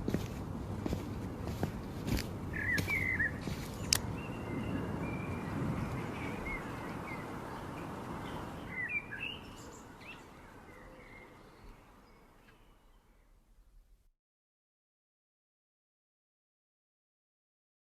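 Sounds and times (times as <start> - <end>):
small birds chirping: 0.2 - 13.4.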